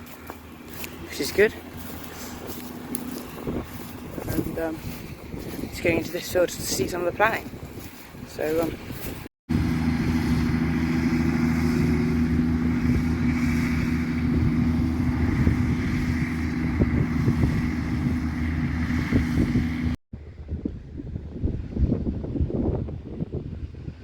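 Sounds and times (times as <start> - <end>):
diesel tractor engine running: 0.0 - 7.5, 9.5 - 20.0
wind on microphone: 0.0 - 24.0.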